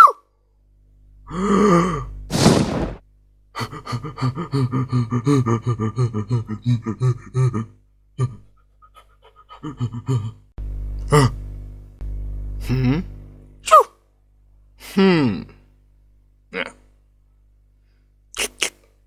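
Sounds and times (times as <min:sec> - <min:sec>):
steady low hum: 0:00.8 - 0:08.5, 0:09.6 - 0:18.0
short sharp burst: 0:02.3 - 0:03.0
cartoon voice babbling nonsense syllables: 0:13.7 - 0:13.9.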